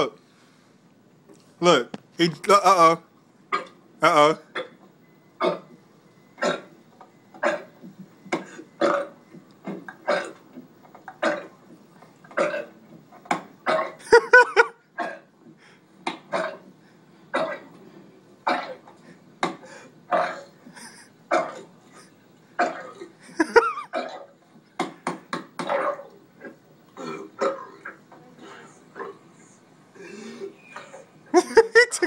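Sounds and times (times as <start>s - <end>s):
man burping: 5.4s - 5.7s, 6.4s - 6.8s, 7.4s - 7.7s, 8.4s - 9.2s, 9.9s - 10.4s, 12.3s - 12.8s, 13.6s - 15.3s, 16.3s - 16.7s, 20.1s - 21.7s, 22.6s - 24.3s, 25.6s - 28.0s.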